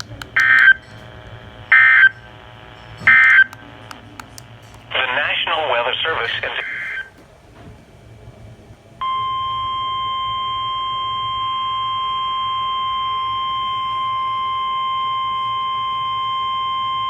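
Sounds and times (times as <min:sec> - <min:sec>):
loud steady high beep: 0:01.7 - 0:02.1, 0:03.1 - 0:03.5, 0:09.0 - 0:17.0.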